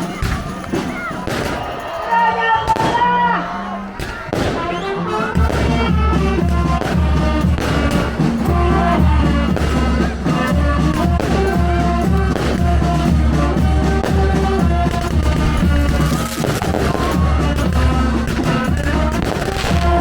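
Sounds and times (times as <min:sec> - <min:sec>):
heavy bass beat: 0:04.1 - 0:20.0.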